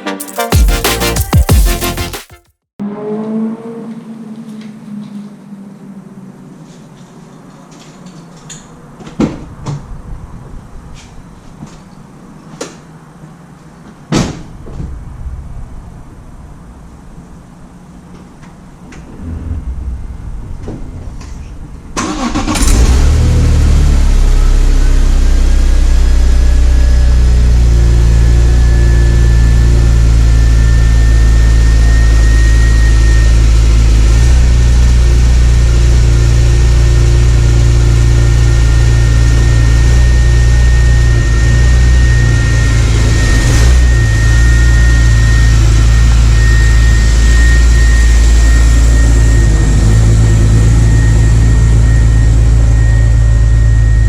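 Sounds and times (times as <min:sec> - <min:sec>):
thin whine: 0:24.1 - 0:54.0
car engine idling: 0:42.0 - 0:54.0.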